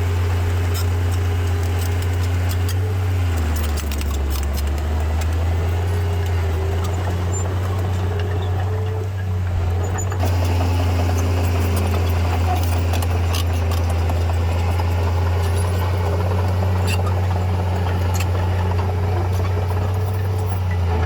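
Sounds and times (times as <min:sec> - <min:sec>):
bulldozer diesel engine droning: 0:00.0 - 0:21.0.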